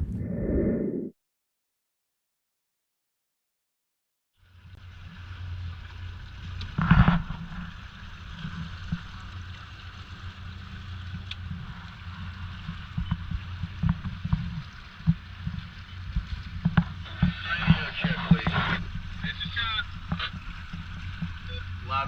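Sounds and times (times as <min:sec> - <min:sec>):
water noise: 0:00.0 - 0:01.1, 0:04.4 - 0:22.0
wind: 0:00.0 - 0:01.1, 0:04.4 - 0:22.0
motorboat engine hum: 0:04.4 - 0:22.0
hull slapping waves: 0:04.7 - 0:22.0.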